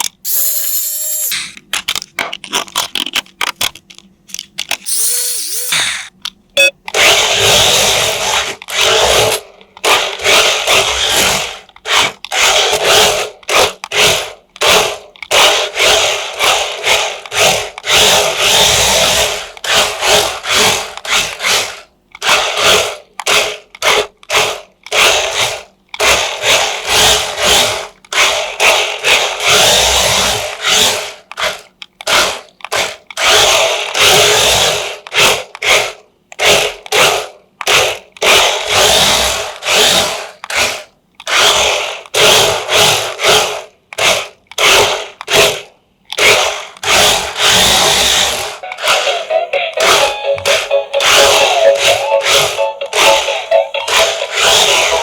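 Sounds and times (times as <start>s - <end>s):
small electric motor whirring: 0.3s - 1.6s, 4.9s - 6.1s.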